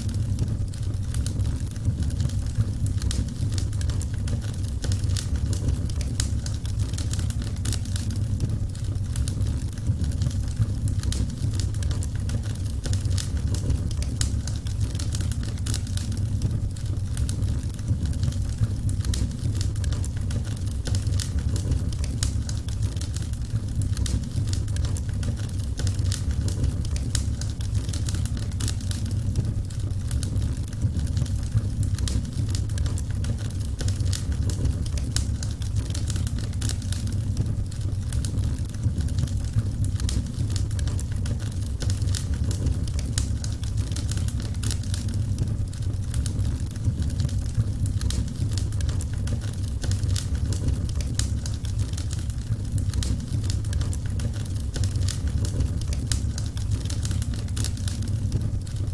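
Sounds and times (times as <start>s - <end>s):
wood fire crackling: 0.0s - 58.9s.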